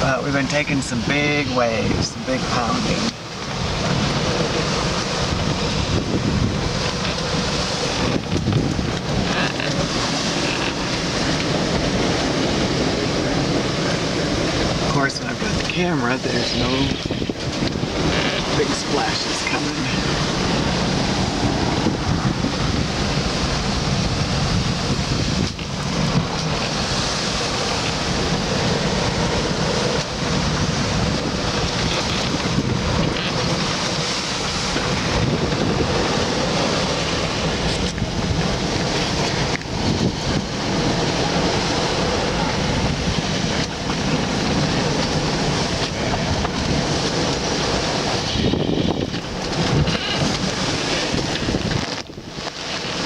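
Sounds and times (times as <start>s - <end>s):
waves and rushing water: 0.0s - 53.0s
wind buffeting microphone: 0.0s - 53.0s.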